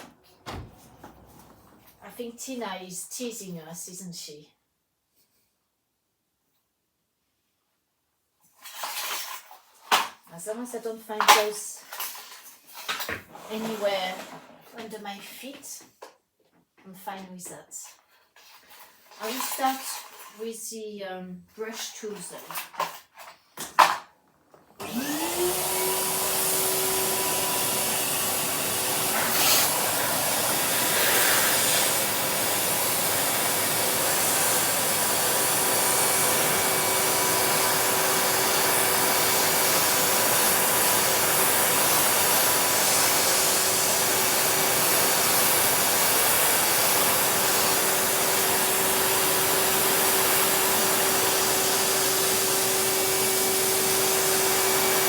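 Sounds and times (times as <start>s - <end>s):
vacuum cleaner running: 0.0s - 2.0s, 13.3s - 14.8s, 24.7s - 55.0s
brush vacuuming floor: 0.0s - 2.1s, 13.2s - 15.0s, 24.8s - 55.0s.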